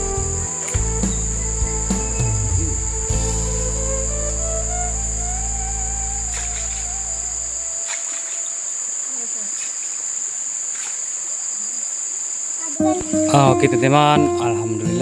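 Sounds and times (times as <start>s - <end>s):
background music melody: 0.0s - 7.9s, 12.8s - 15.0s
crickets droning: 0.0s - 13.9s.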